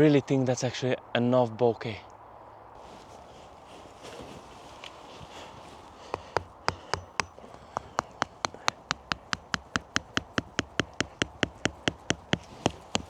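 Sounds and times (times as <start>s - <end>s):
sharp taps or knocks: 6.0s - 13.0s.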